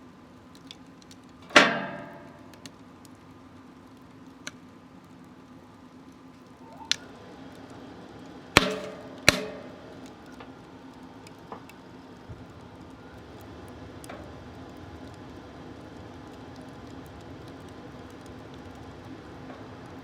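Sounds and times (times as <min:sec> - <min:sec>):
wood fire crackling: 0:00.0 - 0:20.0
loud knocks on metal stove: 0:08.6 - 0:09.9.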